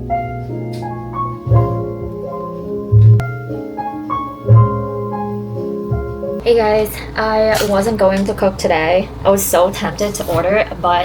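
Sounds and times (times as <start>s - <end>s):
soft low beat: 0.0s - 6.4s
mellow melody of held notes: 0.0s - 6.8s.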